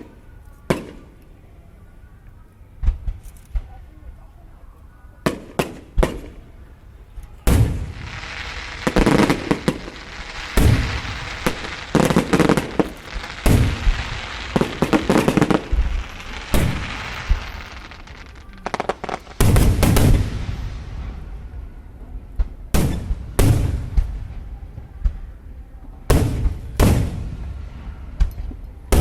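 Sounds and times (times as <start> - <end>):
fireworks bangs: 5.2 - 6.5, 7.1 - 21.7, 22.3 - 25.3, 26.1 - 29.0
fireworks crackling: 7.1 - 21.5.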